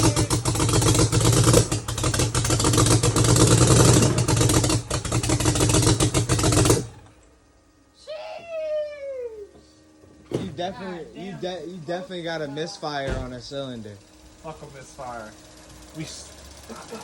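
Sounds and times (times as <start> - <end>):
car engine running rough with clatter: 0.0 - 7.2, 13.1 - 17.0.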